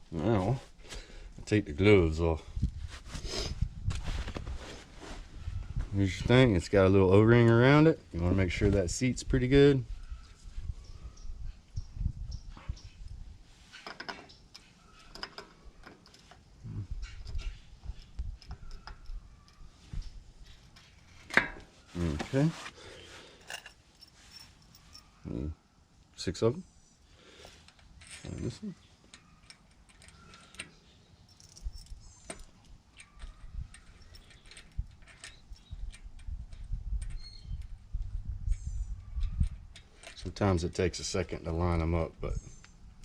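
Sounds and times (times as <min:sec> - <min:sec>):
small metallic clicks and clinks: 0:23.4 - 0:25.2, 0:27.6 - 0:37.7.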